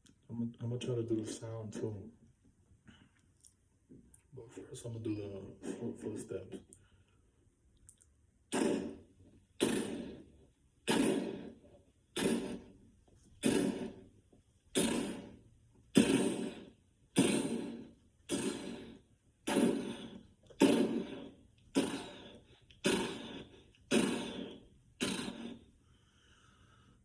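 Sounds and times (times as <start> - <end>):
man making heavy thuds with mouth: 8.5 - 10.3, 10.9 - 12.8, 13.4 - 14.1, 14.7 - 25.6.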